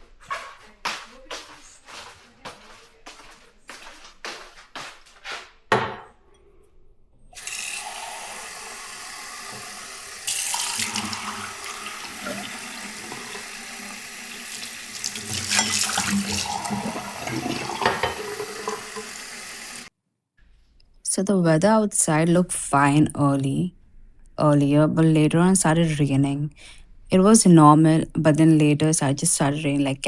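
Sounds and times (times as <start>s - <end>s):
running water rushing: 7.4s - 19.9s.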